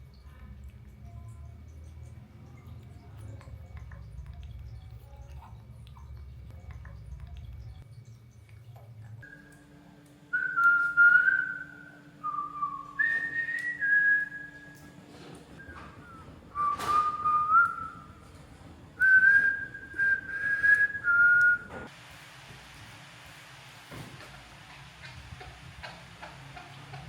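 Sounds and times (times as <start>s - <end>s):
person whistling a tune: 10.4s - 14.8s, 15.6s - 18.2s, 19.0s - 21.8s.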